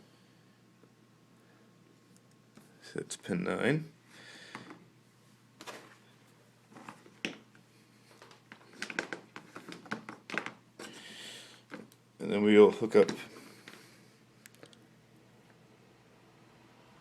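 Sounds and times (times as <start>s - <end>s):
test probes clicking: 14.4s - 14.8s.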